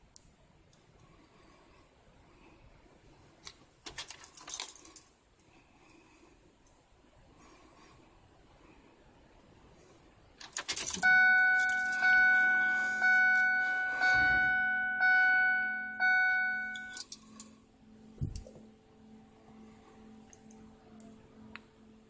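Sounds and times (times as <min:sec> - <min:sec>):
faint low hum: 0:00.0 - 0:22.0
keys jangling: 0:03.9 - 0:05.1, 0:10.4 - 0:11.0, 0:11.6 - 0:12.1, 0:16.7 - 0:17.5
vehicle warning chime dinging: 0:11.0 - 0:17.5.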